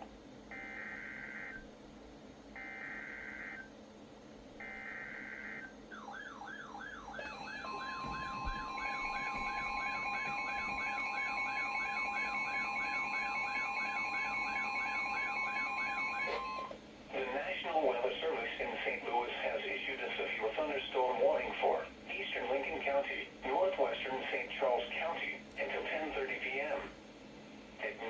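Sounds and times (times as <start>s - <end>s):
steady long warning tone: 0.0s - 21.6s
warbling siren-like alarm: 0.5s - 1.6s, 2.6s - 3.7s, 4.6s - 16.8s
buzzy data tones: 7.2s - 16.7s.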